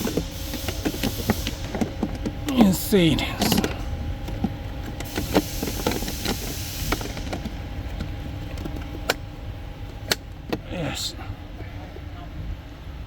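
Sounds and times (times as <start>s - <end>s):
hiss: 0.0s - 3.6s, 5.0s - 7.7s
steady low hum: 0.0s - 13.0s.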